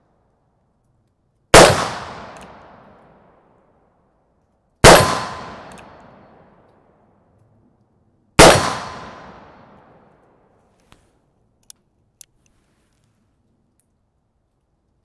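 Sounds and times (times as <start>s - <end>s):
faint clicks: 10.1s - 15.0s.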